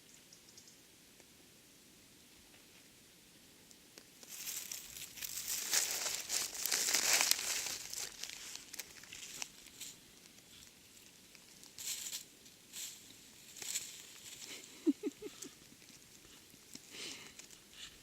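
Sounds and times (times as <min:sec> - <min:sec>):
dry crinkling and rustling: 0:04.2 - 0:18.0.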